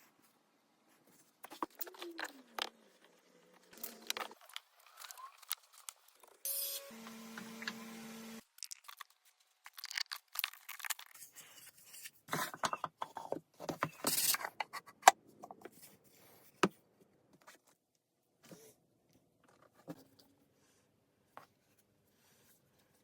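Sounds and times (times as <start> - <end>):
small power tool humming: 6.5 - 8.4
wooden pieces clicking and scraping: 8.6 - 12.1.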